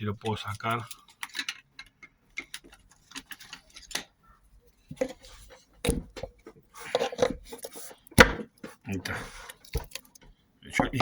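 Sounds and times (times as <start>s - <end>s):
clicks and scrapes of parts handled: 0.2s - 10.4s
clatter of parts: 0.3s - 8.8s.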